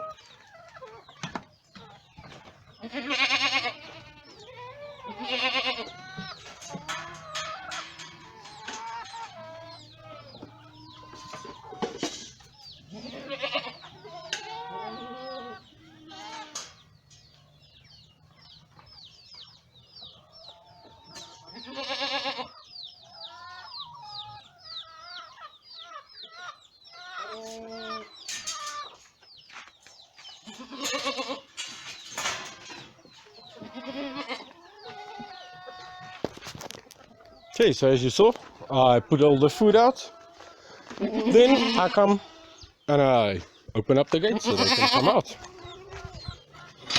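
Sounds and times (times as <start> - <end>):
chickens clucking: 0.0 - 46.9
goats bleating: 2.8 - 10.8, 12.9 - 16.8, 21.5 - 22.6, 30.4 - 31.6, 33.5 - 36.2, 40.8 - 42.6, 44.1 - 45.9.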